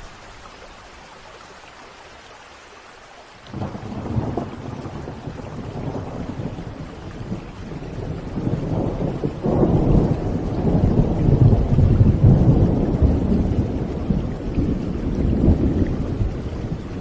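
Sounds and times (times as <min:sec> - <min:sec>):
rain hissing: 0:00.0 - 0:17.0
thunder rumbling: 0:03.5 - 0:17.0.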